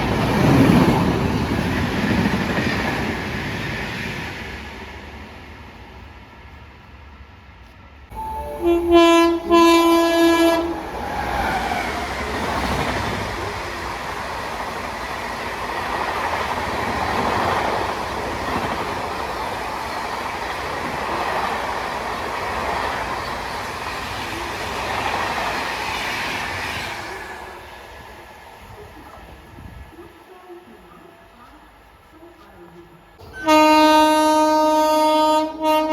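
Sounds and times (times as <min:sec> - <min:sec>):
train passing with rumble: 0:00.0 - 0:35.9
train horn blasts: 0:08.1 - 0:11.6, 0:33.2 - 0:35.9.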